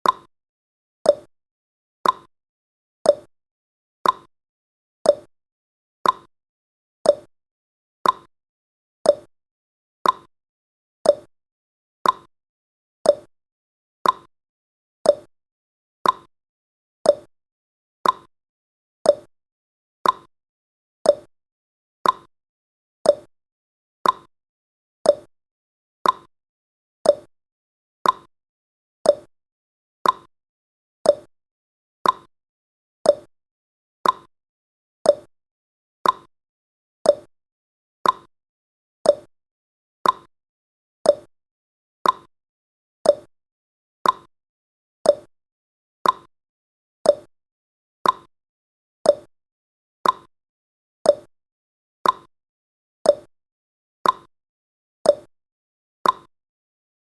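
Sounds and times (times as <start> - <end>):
timer ticking: 0.0 - 0.3, 1.1 - 1.3, 2.0 - 2.3, 3.1 - 3.3, 4.0 - 4.3, 5.1 - 5.3, 6.0 - 6.3, 7.1 - 7.3, 8.0 - 8.3, 9.1 - 9.3, 10.0 - 10.3, 11.1 - 11.3, 12.0 - 12.3, 13.1 - 13.3, 14.0 - 14.3, 15.1 - 15.3, 16.0 - 16.3, 17.1 - 17.3, 18.0 - 18.3, 19.1 - 19.3, 20.0 - 20.3, 21.1 - 21.3, 22.0 - 22.3, 23.1 - 23.3, 24.0 - 24.3, 25.1 - 25.3, 26.0 - 26.3, 27.0 - 27.3, 28.0 - 28.3, 29.0 - 29.3, 30.0 - 30.3, 31.1 - 31.3, 32.0 - 32.3, 33.1 - 33.3, 34.0 - 34.3, 35.1 - 35.3, 36.0 - 36.3, 37.1 - 37.3, 38.0 - 38.3, 39.1 - 39.3, 40.0 - 40.3, 41.1 - 41.3, 42.0 - 42.3, 43.0 - 43.3, 44.0 - 44.3, 45.1 - 45.3, 46.0 - 46.3, 47.1 - 47.3, 48.0 - 48.3, 49.1 - 49.3, 50.0 - 50.3, 51.1 - 51.3, 52.0 - 52.3, 53.1 - 53.3, 54.0 - 54.3, 55.1 - 55.3, 56.0 - 56.3.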